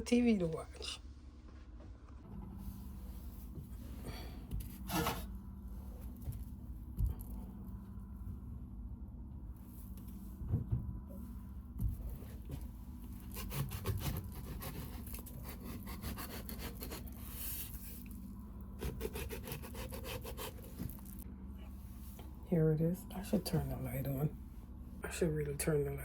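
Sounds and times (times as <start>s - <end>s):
knife sawing through fruit: 13.2s - 17.8s, 18.8s - 20.8s.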